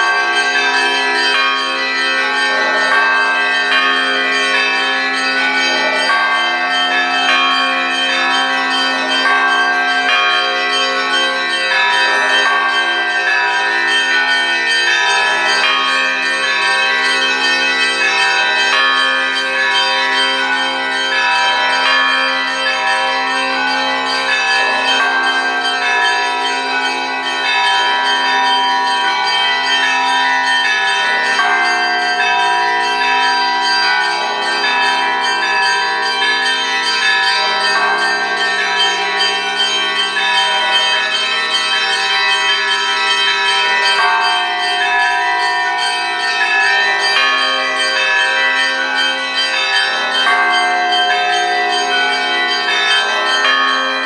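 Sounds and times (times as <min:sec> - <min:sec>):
church bells pealing: 0:00.0 - 0:54.0.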